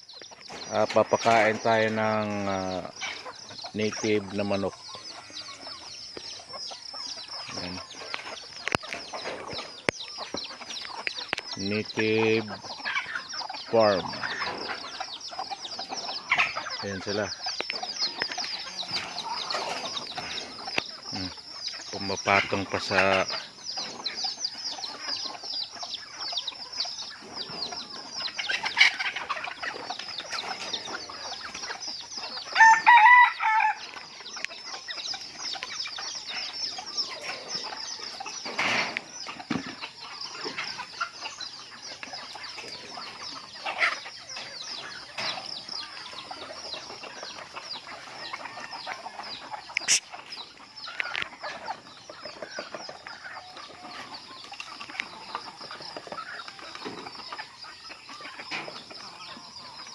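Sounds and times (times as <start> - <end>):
chickens clucking: 0.0 - 59.9
rooster crowing: 32.6 - 33.9.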